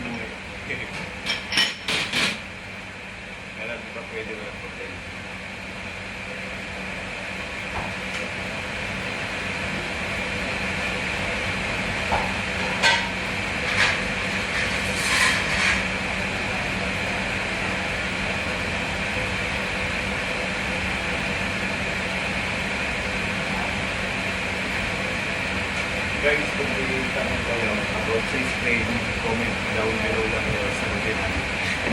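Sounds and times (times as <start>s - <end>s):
kitchen machinery humming: 0.0s - 31.9s.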